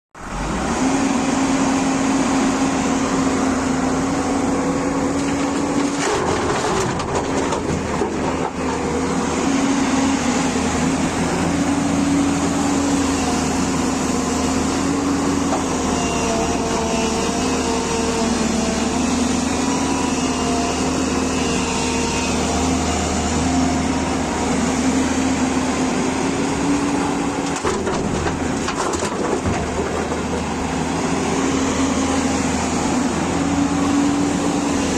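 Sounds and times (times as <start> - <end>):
excavator diesel rumble: 0.2 - 34.9
hydraulic whine: 8.1 - 34.9.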